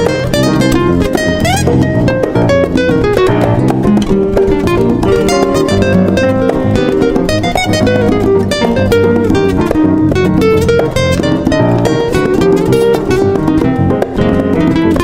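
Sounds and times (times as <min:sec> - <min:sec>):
plucked guitar: 0:00.0 - 0:15.0
steady bass line: 0:00.0 - 0:15.0.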